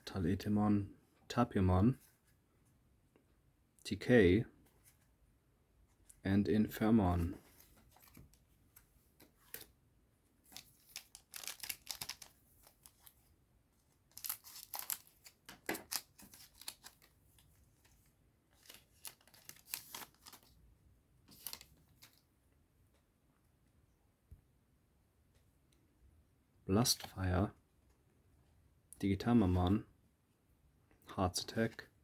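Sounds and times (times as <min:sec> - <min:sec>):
foil pack tearing and crinkling: 0:10.9 - 0:12.3, 0:14.1 - 0:17.1, 0:18.7 - 0:20.4.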